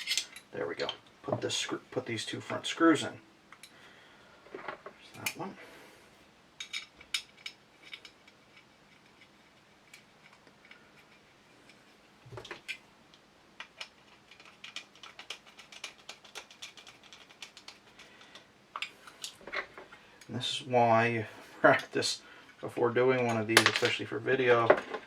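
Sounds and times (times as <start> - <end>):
small metal parts clicking: 0.0 - 1.0, 6.6 - 11.8, 13.6 - 19.7.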